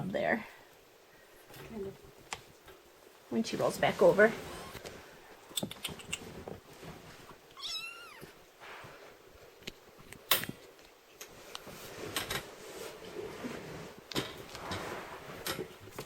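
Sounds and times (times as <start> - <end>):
kitten mewing: 7.6 - 8.4.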